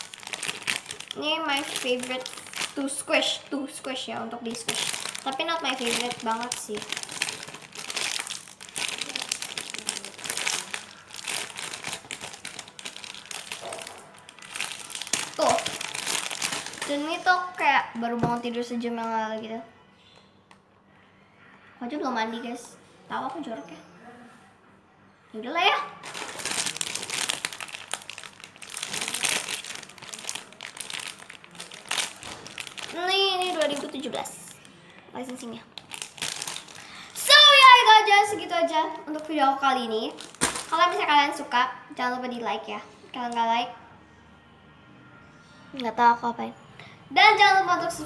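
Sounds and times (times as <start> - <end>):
squishy toy crinkling and rustling: 0.0 - 19.2, 26.0 - 41.4.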